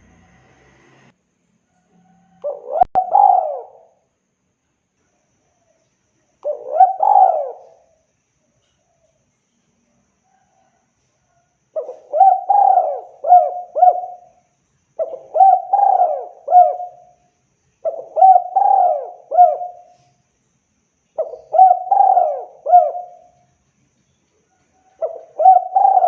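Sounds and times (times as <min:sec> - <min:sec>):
dove cooing: 0:02.3 - 0:04.0, 0:06.4 - 0:07.9, 0:11.8 - 0:14.4, 0:15.0 - 0:17.2, 0:17.8 - 0:20.1, 0:21.2 - 0:23.4, 0:24.8 - 0:26.0.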